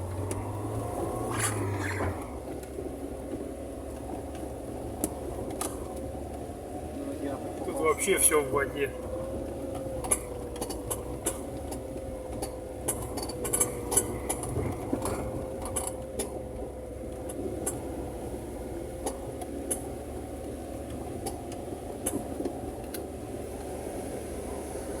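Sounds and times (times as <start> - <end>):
body clicks and knocks: 0.0 - 18.2, 18.8 - 23.8
vehicle engine droning and whining: 0.0 - 25.0.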